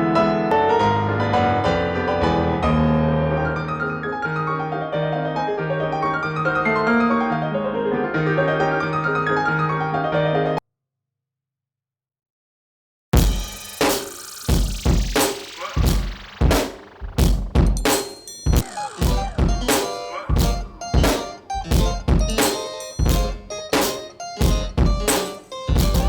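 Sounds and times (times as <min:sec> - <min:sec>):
piano music: 0:00.0 - 0:10.6, 0:17.3 - 0:26.0.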